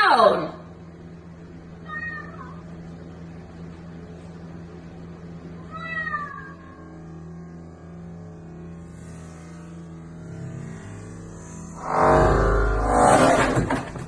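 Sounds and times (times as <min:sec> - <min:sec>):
steady low hum: 0:00.0 - 0:14.0
cat meowing: 0:01.8 - 0:02.7, 0:05.6 - 0:06.8.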